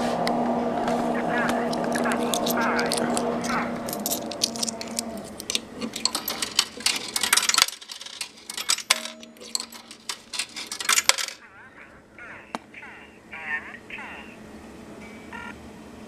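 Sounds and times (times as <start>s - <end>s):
coins clinking into payphone: 1.8s - 11.4s.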